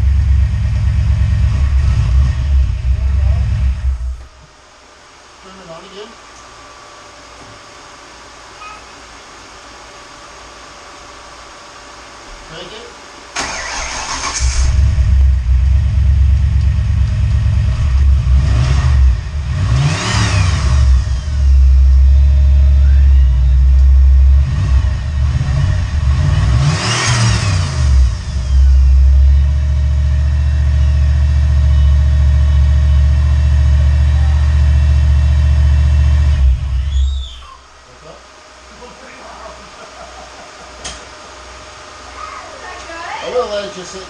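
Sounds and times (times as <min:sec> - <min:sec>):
engine revving: 0:00.0 - 0:04.1, 0:13.4 - 0:37.0
engine cranking: 0:13.4 - 0:14.9.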